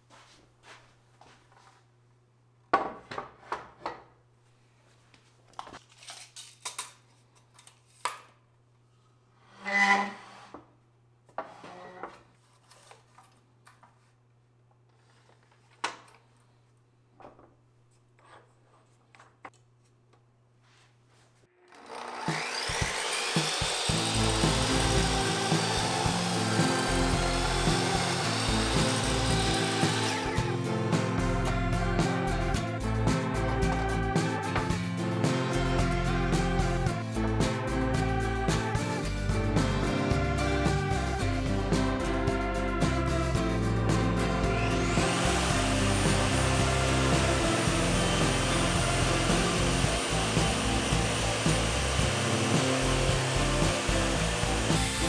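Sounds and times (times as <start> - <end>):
wood and tools knocking: 22.3 - 30.4, 44.0 - 55.0
background music with beat: 23.4 - 55.0.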